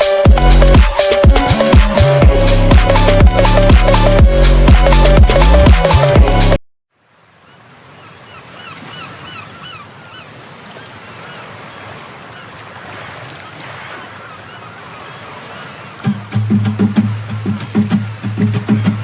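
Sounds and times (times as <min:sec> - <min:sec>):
background music: 0:00.0 - 0:06.6
bird calling: 0:07.4 - 0:18.2.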